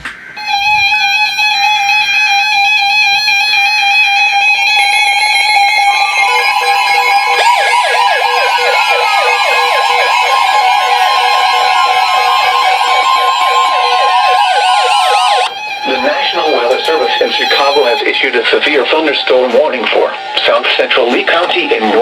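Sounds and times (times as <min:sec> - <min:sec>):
siren-like warble: 0:00.4 - 0:22.0
steady high alert tone: 0:00.4 - 0:22.0
electronic beeping: 0:04.6 - 0:21.0.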